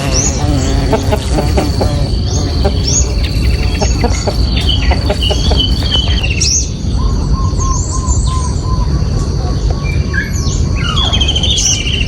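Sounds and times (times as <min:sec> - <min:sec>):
steady high whine: 0:00.0 - 0:08.1
birds chirping: 0:00.0 - 0:12.0
constant low rumble: 0:00.0 - 0:12.0.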